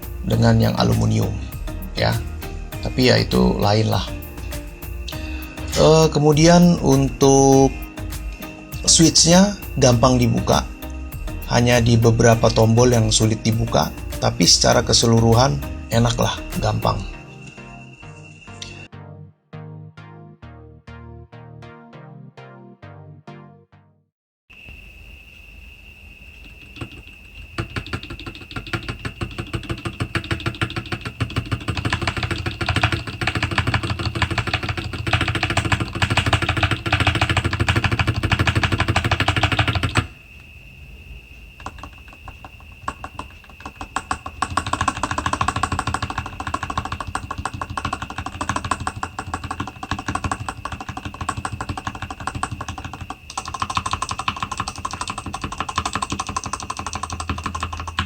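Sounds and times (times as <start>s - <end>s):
rapid typing on mechanical keyboard: 0.2s - 1.4s, 27.6s - 40.1s, 42.9s - 58.0s.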